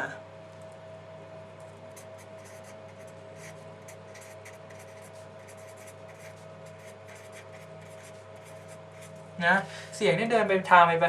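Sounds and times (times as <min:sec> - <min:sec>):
low electrical hum: 0:00.0 - 0:11.0
pen scratching on paper: 0:02.0 - 0:09.2.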